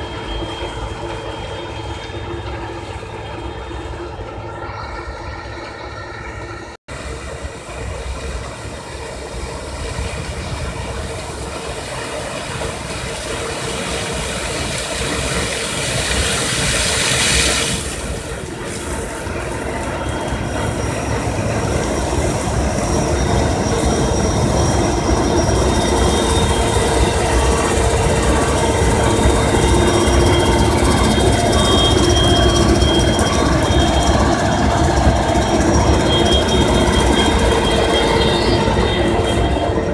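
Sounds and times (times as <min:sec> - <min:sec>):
high whining squeals: 0:00.0 - 0:06.8, 0:07.8 - 0:39.9
combine harvester working: 0:00.0 - 0:39.9.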